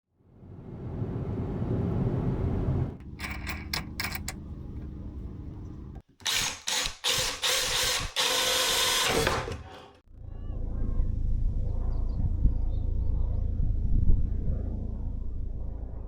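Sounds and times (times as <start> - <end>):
sharp mechanical clicks: 6.2 - 9.7
cordless drill running: 6.2 - 10.0.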